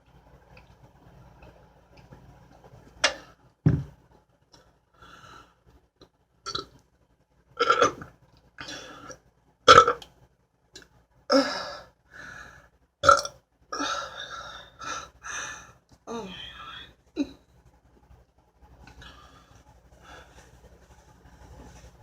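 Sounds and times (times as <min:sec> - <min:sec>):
quiet breaths: 0:04.5 - 0:05.9, 0:11.3 - 0:12.8, 0:13.8 - 0:22.0
woman burping: 0:13.0 - 0:13.9.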